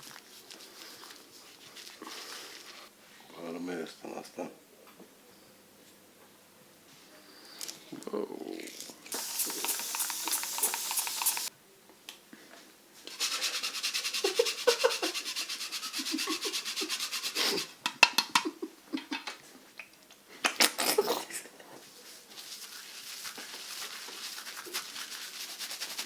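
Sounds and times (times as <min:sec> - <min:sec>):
hands scrubbing hair: 0:09.1 - 0:11.5, 0:13.1 - 0:17.7, 0:22.2 - 0:26.0.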